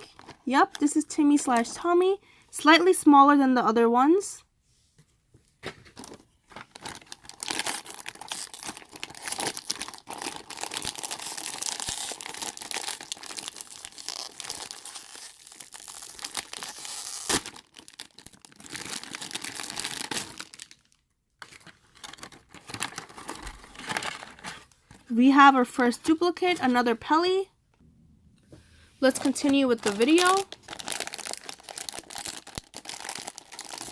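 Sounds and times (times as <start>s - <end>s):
paper wrapper rustling: 5.8s - 25.0s, 29.0s - 33.9s
foil packets crinkling: 6.0s - 24.7s, 29.0s - 33.9s.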